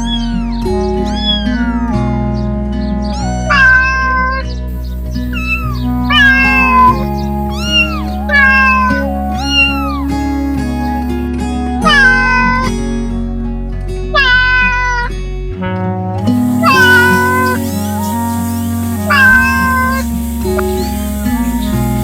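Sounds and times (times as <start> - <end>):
cat meowing: 0.0 - 1.9, 3.2 - 4.5, 5.3 - 10.2, 11.8 - 12.7, 14.1 - 15.2, 16.5 - 20.1
background music: 0.0 - 22.0.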